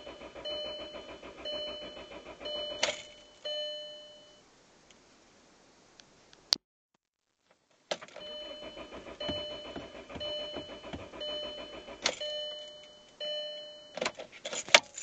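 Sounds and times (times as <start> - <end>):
car engine cranking: 0.0 - 3.4, 7.9 - 13.0.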